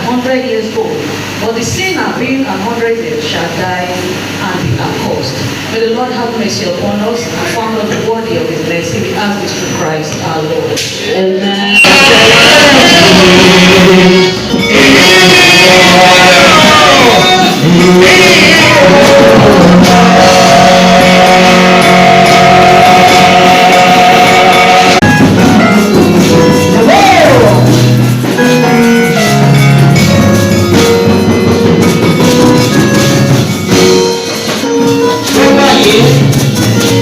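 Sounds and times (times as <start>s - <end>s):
church band music: 11.4s - 37.0s
drums: 11.7s - 37.0s.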